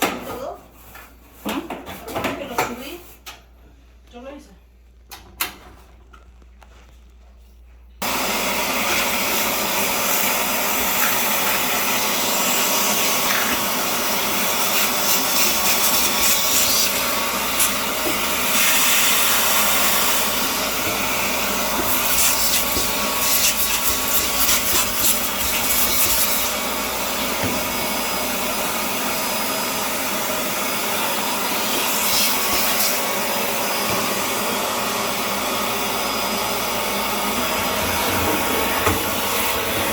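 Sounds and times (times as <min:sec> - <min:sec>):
vacuum cleaner running: 0:08.0 - 0:39.9.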